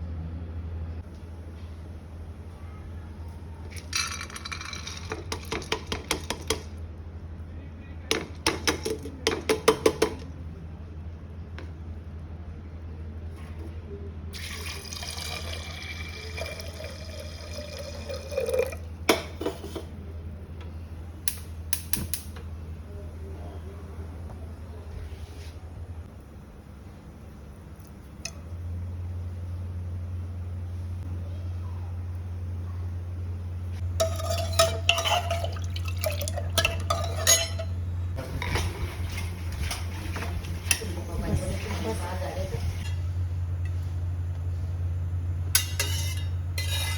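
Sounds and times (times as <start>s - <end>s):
steady low hum: 0.0s - 46.9s
water running into a vessel: 14.3s - 19.0s, 33.9s - 40.6s
metal spoon stirring in pot: 33.8s - 40.9s, 45.6s - 46.9s
spoon clinking against pot: 34.0s - 37.8s.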